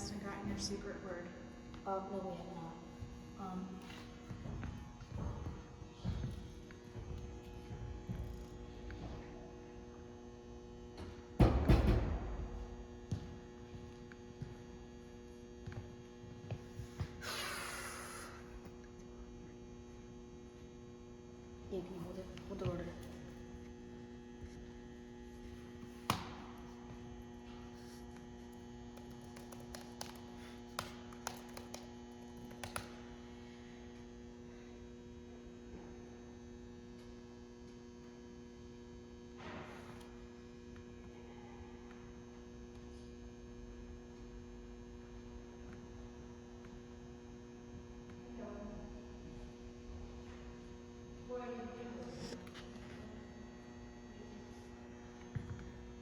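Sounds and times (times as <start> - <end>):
electrical mains hum: 0.0 - 56.0
sharp taps and clicks: 28.9 - 32.9.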